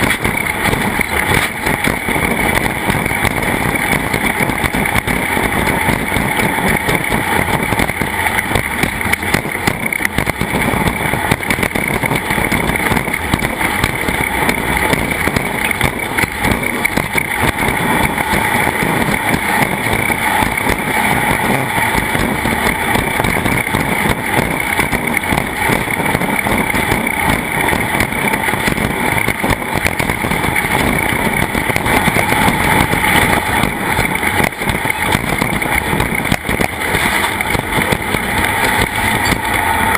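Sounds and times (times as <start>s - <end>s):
race car engine: 0.0s - 39.9s
rushing noise: 0.0s - 39.9s.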